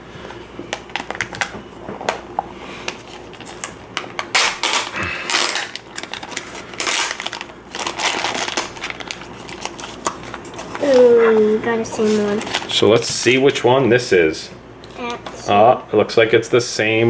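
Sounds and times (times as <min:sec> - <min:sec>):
plastic packaging crinkling: 0:00.7 - 0:13.4.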